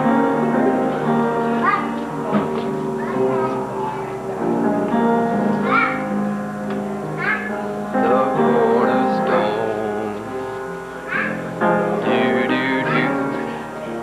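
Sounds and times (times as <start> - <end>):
music with long held notes: 0.0 - 14.0
wavering voice: 11.1 - 14.0.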